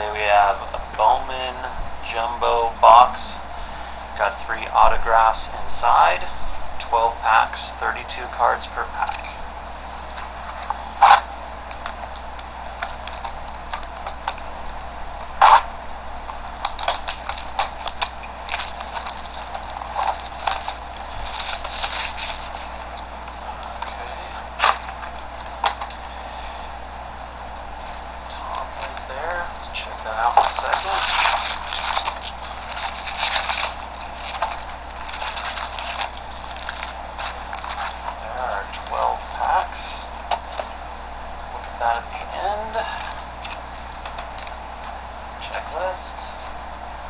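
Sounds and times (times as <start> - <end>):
foil packs crinkling: 10.7 - 14.4, 16.5 - 26.0, 30.2 - 39.0.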